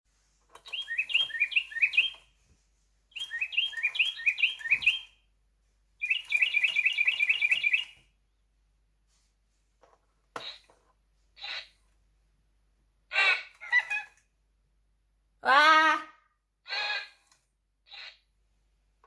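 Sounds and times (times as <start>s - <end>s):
toy bird whistled chirps: 0.6s - 2.2s, 3.1s - 5.2s, 6.0s - 8.0s.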